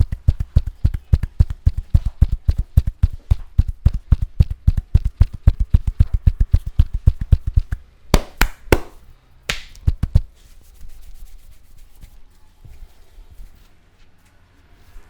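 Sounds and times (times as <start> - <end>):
hand slaps: 0.0 - 10.3
hands chopping on body: 0.0 - 10.3
brushing swish: 0.0 - 12.2
hands rubbing skin and hair: 0.0 - 12.2.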